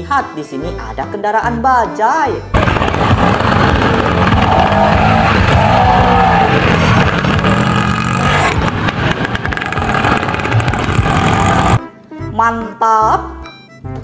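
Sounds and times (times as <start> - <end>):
noisy street sounds: 2.6 - 11.8
rickshaw engine running: 2.6 - 11.8.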